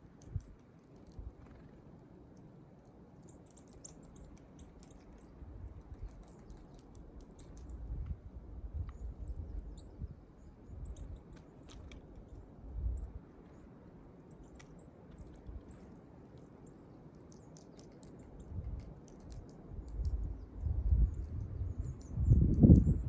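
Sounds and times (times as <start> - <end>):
birds pecking ticks: 0.0 - 23.0.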